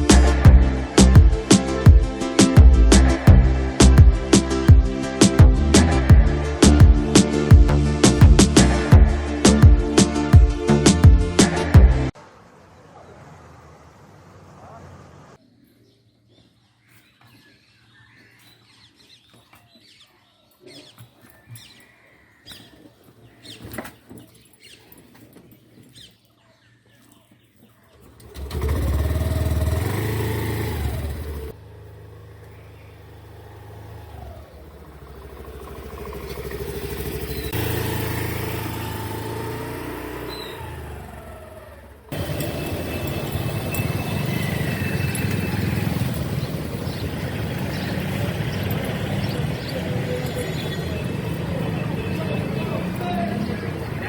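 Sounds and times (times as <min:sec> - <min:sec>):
vehicle engine running: 0:00.0 - 0:12.2, 0:28.1 - 0:54.0.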